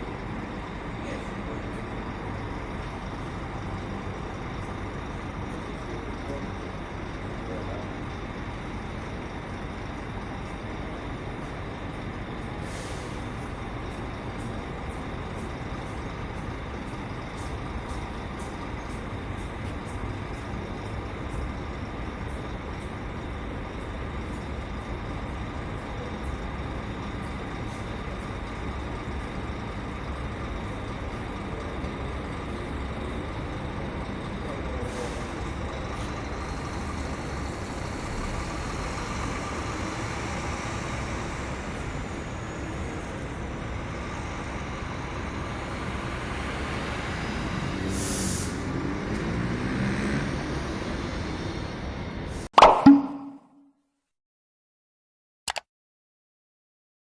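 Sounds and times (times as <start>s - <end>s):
bus engine idling: 0.0s - 48.8s
compressed air hissing: 48.0s - 48.6s.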